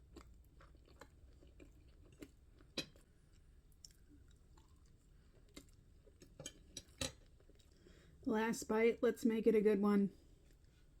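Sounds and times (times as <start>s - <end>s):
chewing with wet mouth clicks: 0.0s - 7.8s.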